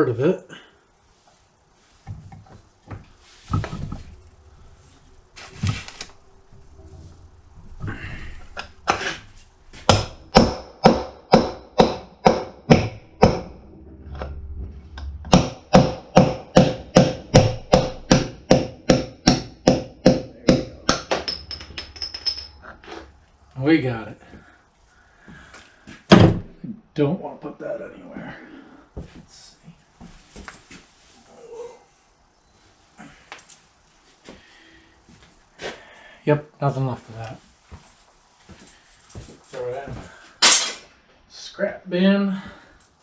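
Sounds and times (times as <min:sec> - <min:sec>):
hammer striking metal punch: 0:09.8 - 0:13.6, 0:15.3 - 0:22.6, 0:40.4 - 0:40.8.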